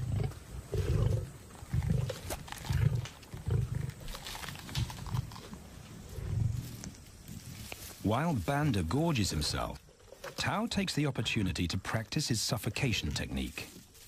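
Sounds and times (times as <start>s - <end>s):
lions growling: 0.0s - 4.2s, 4.9s - 7.7s.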